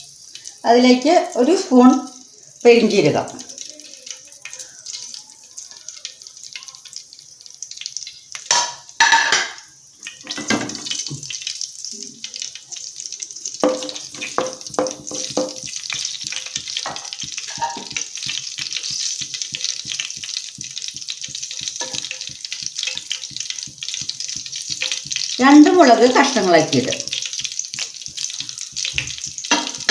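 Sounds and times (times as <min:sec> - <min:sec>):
seeds sizzling in hot oil: 0:00.0 - 0:29.9
spoon scraping a pan: 0:13.6 - 0:29.9.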